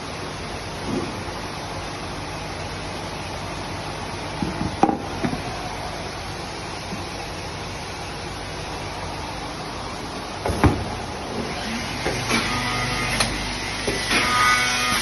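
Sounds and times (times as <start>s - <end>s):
electric motors humming: 8.7s - 15.0s.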